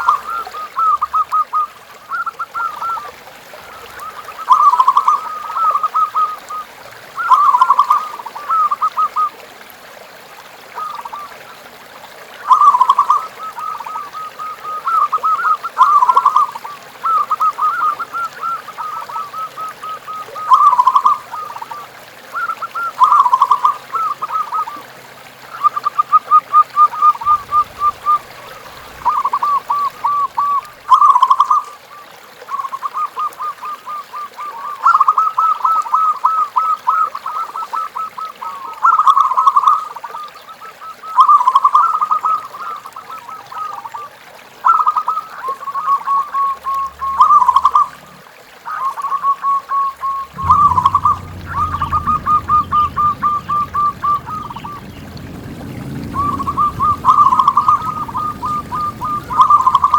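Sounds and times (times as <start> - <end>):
doves cooing: 27.0 - 31.3, 49.7 - 59.9.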